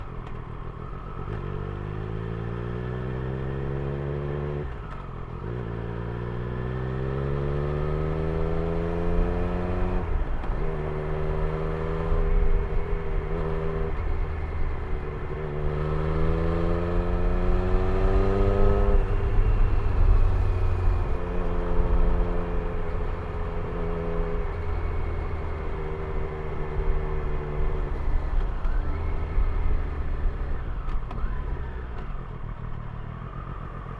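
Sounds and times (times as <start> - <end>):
motorcycle engine accelerating: 0.2 - 33.9.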